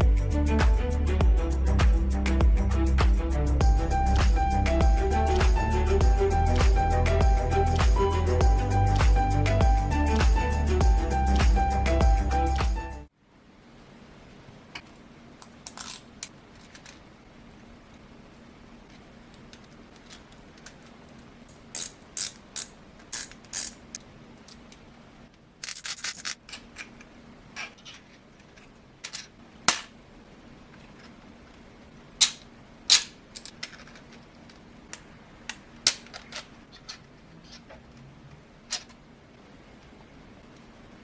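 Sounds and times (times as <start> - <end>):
faint steady hum: 0.0 - 41.0
plastic parts clicking and snapping: 32.2 - 38.1.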